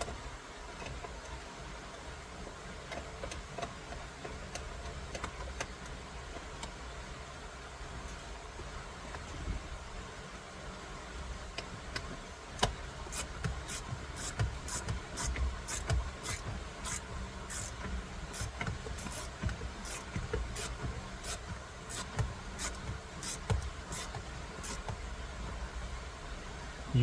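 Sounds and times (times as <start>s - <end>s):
hand ratchet clicking: 12.6s - 25.0s
tool knocking against wheel: 12.6s - 25.1s.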